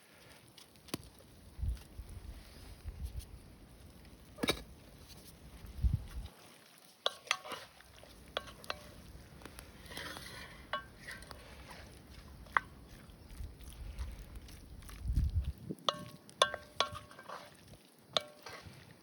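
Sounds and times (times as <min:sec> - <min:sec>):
utensil clinking and scraping pan: 0:04.4 - 0:04.7, 0:07.0 - 0:13.3, 0:15.8 - 0:19.0.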